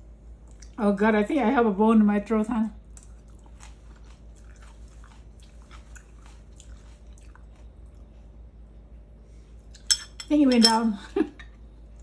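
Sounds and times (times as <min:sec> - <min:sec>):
person chewing and swallowing: 0:02.9 - 0:08.3.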